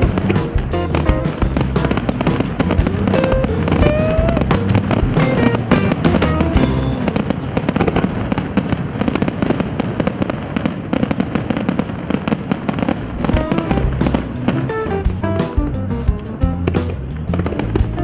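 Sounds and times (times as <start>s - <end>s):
music soundtrack: 0.0s - 7.4s, 13.2s - 18.0s
fireworks bursting and crackling: 0.0s - 18.0s.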